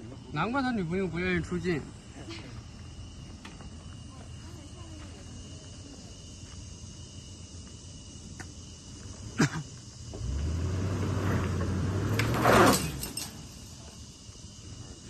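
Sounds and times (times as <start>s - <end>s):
off-road vehicle engine revving: 10.0s - 13.6s.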